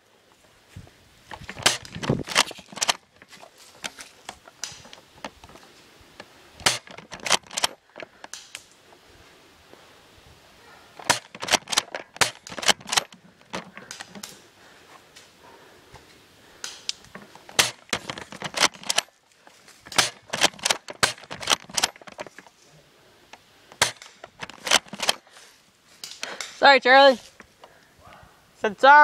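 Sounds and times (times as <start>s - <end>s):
airsoft guns firing: 6.6s - 7.6s, 11.0s - 13.0s, 17.5s - 19.0s, 19.9s - 21.9s, 23.8s - 25.2s.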